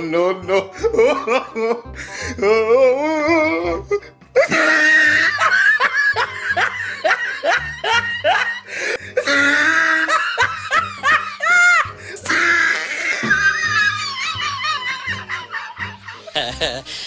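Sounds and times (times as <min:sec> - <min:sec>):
hearty laughter: 0:04.4 - 0:12.0, 0:13.2 - 0:17.0.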